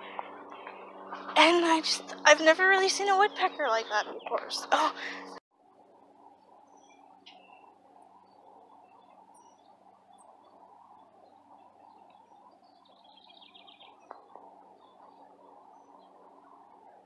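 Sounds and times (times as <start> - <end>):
high bird chirps: 11.2 - 16.5.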